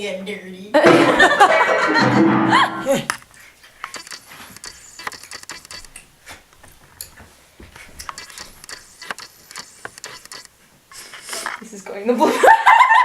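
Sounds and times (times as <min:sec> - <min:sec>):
faint clicks and rustles: 0:03.2 - 0:11.8.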